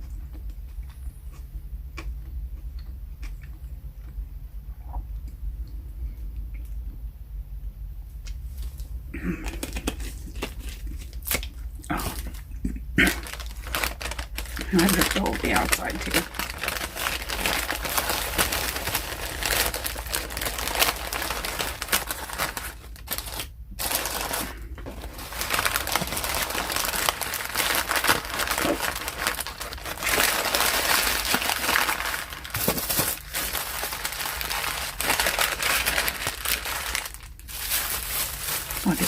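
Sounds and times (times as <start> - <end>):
wrapping paper crinkling: 9.4 - 12.4, 13.0 - 39.0.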